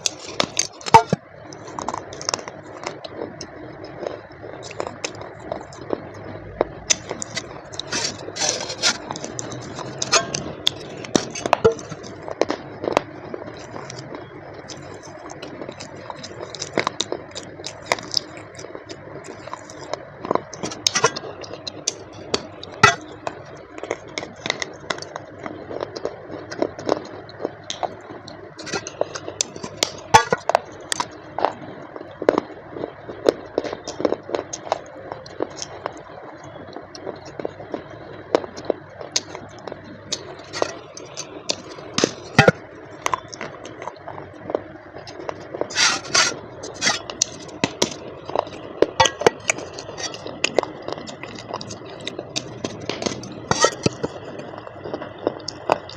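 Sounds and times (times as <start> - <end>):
packaging crackling and scraping: 6.9 - 18.7, 28.6 - 31.1, 40.1 - 42.6, 45.0 - 55.9.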